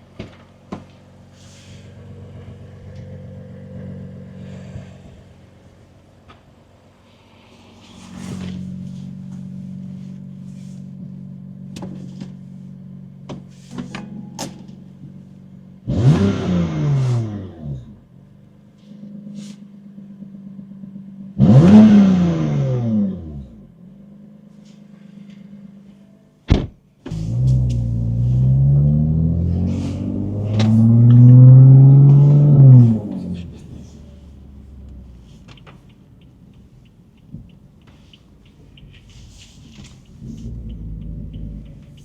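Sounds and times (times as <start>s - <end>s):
car engine idling: 0.0s - 16.9s, 17.8s - 21.9s, 23.2s - 42.0s
engine revving: 0.8s - 12.3s, 15.4s - 18.0s, 21.3s - 25.5s, 27.1s - 35.7s, 38.7s - 42.0s.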